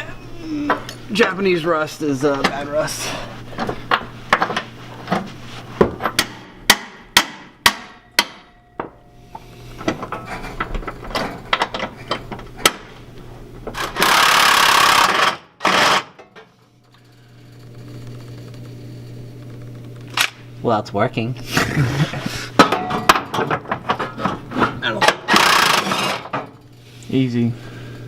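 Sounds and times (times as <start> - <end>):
hand tools clanking on metal: 22.6 - 26.6.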